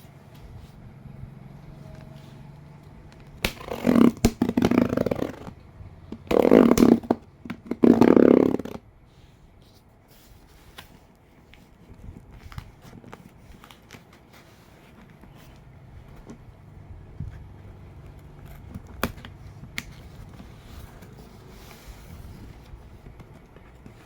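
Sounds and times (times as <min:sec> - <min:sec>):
packaging rustling and scraping: 0:06.2 - 0:16.6, 0:17.2 - 0:24.0.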